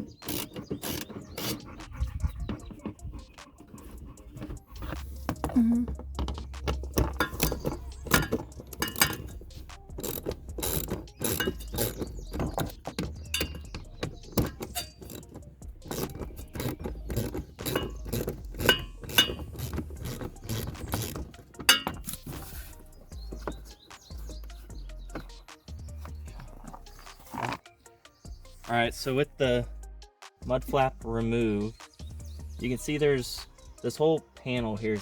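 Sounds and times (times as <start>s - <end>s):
ratchet clicking: 0.0s - 1.7s, 6.1s - 25.4s
metallic clinking of hand tools: 0.0s - 27.6s.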